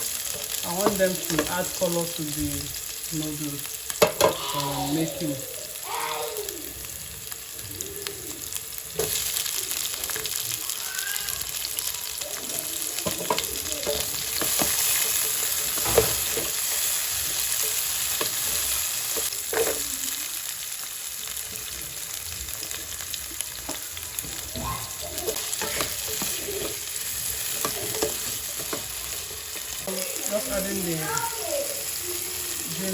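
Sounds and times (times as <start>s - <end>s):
vegetables sizzling in hot oil: 0.0s - 32.9s
utensil scraping a pan: 25.2s - 29.8s.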